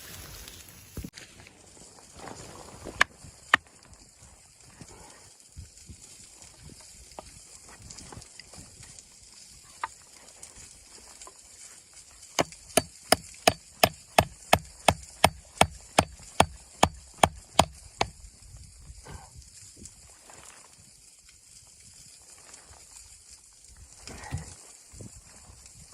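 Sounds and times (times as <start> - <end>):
wood being chopped: 12.4 - 18.2.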